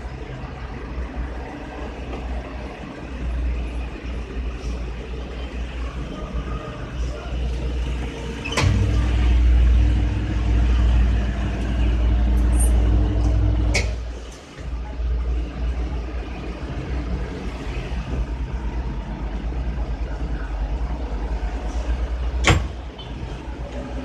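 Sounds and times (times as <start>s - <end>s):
motor humming: 8.6s - 14.0s.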